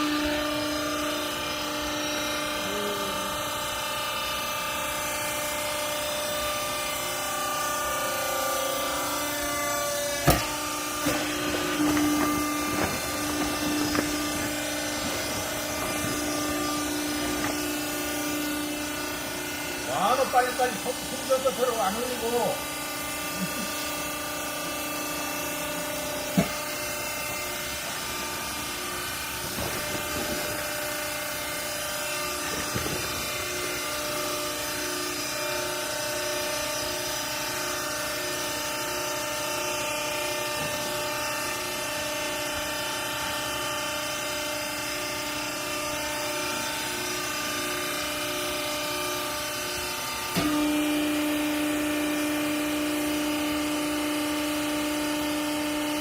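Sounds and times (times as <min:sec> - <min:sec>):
hydraulic press motor whine: 0:00.0 - 0:56.0.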